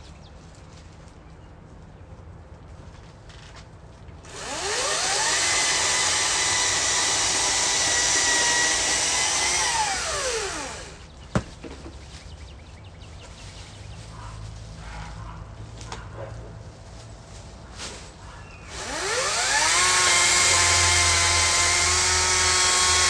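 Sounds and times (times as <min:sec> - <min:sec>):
power saw motor whining: 0:04.3 - 0:11.0, 0:18.7 - 0:23.0.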